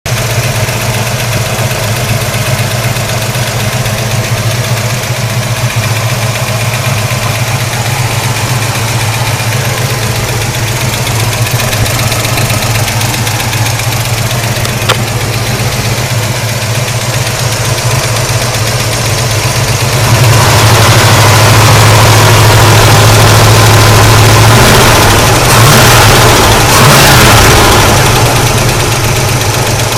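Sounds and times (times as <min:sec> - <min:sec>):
car engine idling: 0:00.0 - 0:29.9
rapid engine ticking: 0:00.0 - 0:29.9.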